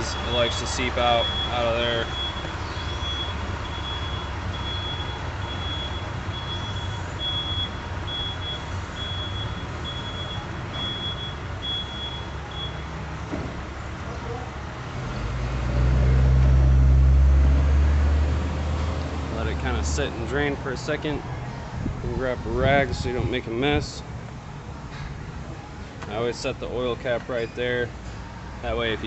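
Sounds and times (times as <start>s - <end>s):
workshop noise: 0.0s - 15.4s.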